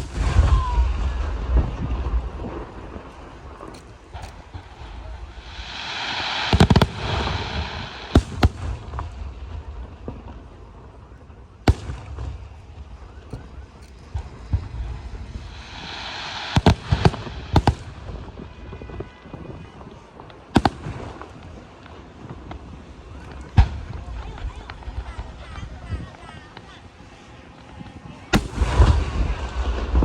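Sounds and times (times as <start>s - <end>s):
rushing crackle: 0.0s - 30.0s
fireworks shells bursting: 2.3s - 8.6s, 13.2s - 18.2s.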